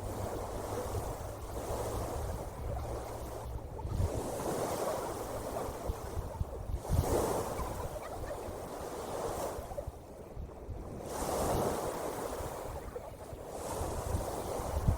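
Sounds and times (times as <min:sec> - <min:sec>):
ocean waves washing in: 0:00.0 - 0:14.9
wind rumbling on microphone: 0:00.0 - 0:14.9.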